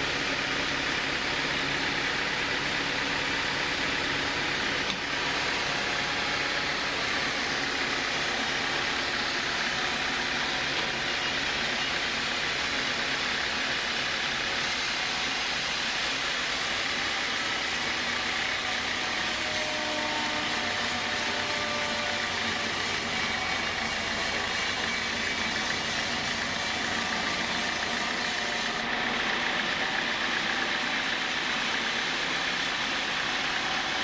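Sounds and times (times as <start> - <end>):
sawmill machinery running: 0.0 - 34.0.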